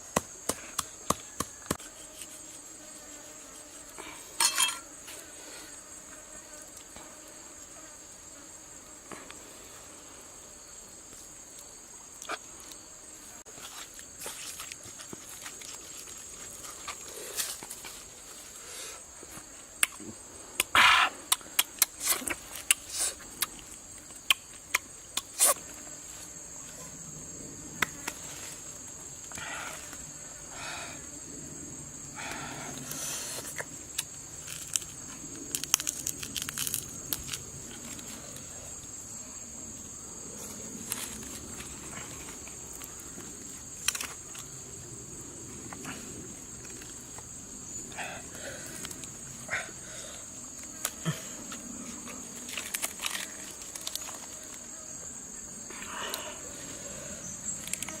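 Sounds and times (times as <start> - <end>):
high-pitched insect drone: 1.2 - 6.5.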